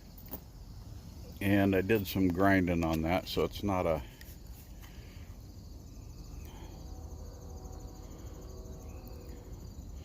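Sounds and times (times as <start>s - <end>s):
insect chirring: 0.0s - 10.0s
low background rumble: 3.6s - 10.0s.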